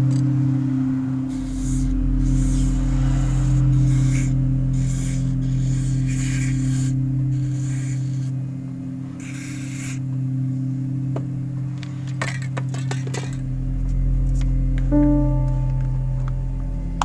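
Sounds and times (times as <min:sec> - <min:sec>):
steady low hum: 0:00.0 - 0:17.0
metal reel parts scraping: 0:12.0 - 0:13.4.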